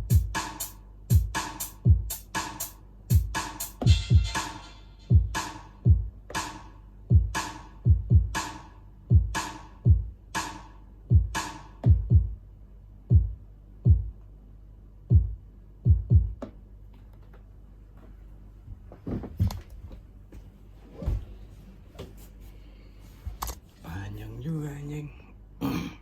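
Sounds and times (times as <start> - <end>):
electronic kick drums: 0.0 - 12.4, 13.0 - 14.2, 15.0 - 16.6
bright clap or snare hits: 6.3 - 6.7.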